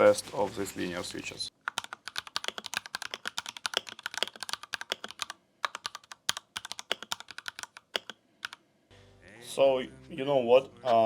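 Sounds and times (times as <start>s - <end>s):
mechanical keyboard key clacks: 1.7s - 8.6s.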